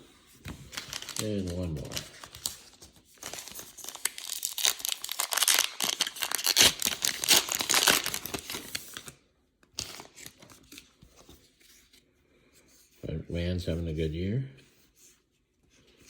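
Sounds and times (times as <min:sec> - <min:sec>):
plastic wrapper crinkling and tearing: 0:00.5 - 0:11.0.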